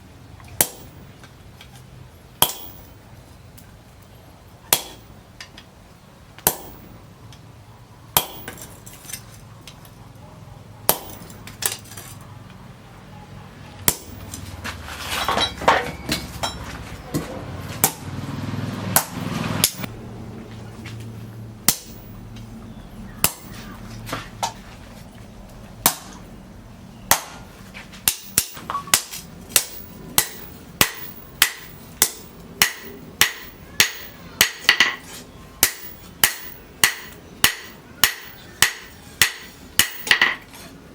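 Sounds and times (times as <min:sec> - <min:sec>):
hammer striking steel on anvil: 0:00.6 - 0:01.0, 0:02.4 - 0:03.0, 0:04.7 - 0:05.1, 0:06.4 - 0:07.0, 0:08.2 - 0:09.2, 0:10.9 - 0:12.0, 0:13.8 - 0:14.5, 0:15.2 - 0:18.1, 0:18.9 - 0:19.9, 0:21.6 - 0:22.2, 0:23.2 - 0:23.8, 0:28.0 - 0:40.5
rough mixed noise: 0:08.4 - 0:39.8.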